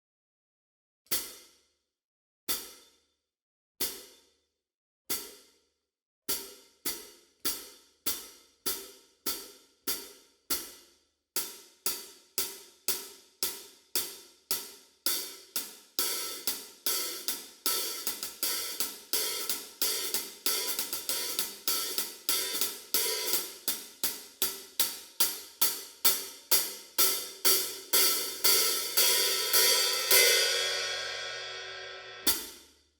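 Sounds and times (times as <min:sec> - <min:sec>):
hi-hats struck in steady beat: 0:11.4 - 0:32.7.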